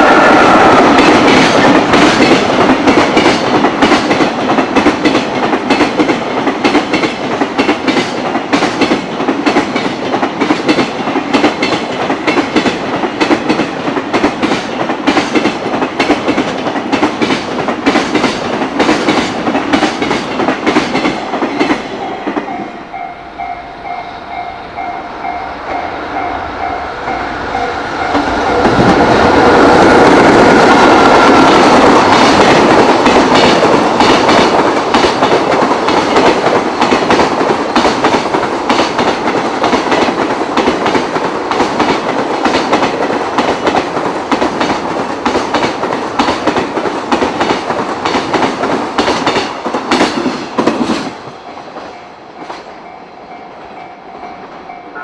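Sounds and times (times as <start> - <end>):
freight train wheels clattering: 0.0 - 55.0
train passing: 0.0 - 55.0
repeating bell-like tone: 22.0 - 28.7.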